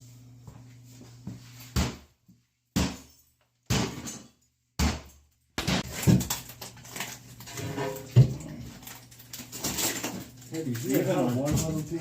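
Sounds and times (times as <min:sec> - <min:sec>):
hammer striking iron bathtub: 0:04.8 - 0:06.3.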